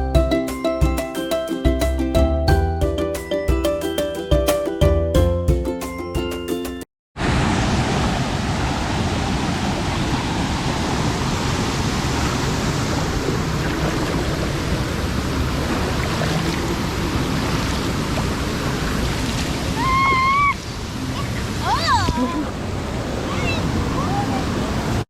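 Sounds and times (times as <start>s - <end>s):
rushing water: 7.2s - 25.0s.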